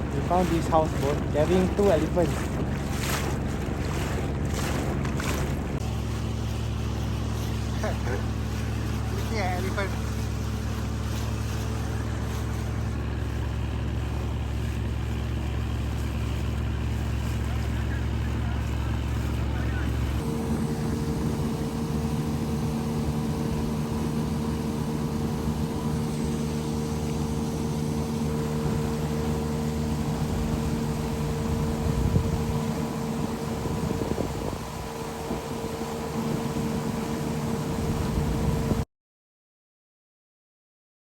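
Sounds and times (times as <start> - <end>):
boat motor humming: 0.0 - 38.8.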